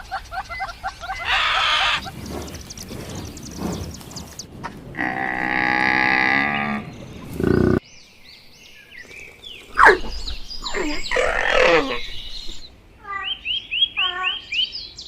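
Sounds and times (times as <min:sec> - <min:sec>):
cow mooing: 0:05.0 - 0:07.8.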